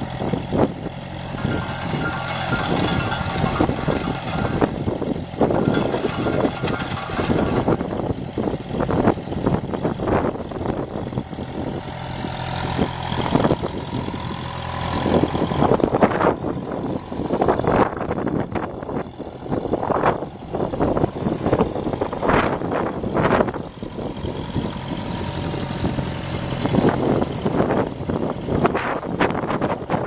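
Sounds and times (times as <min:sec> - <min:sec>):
diesel engine running: 0:00.0 - 0:30.0.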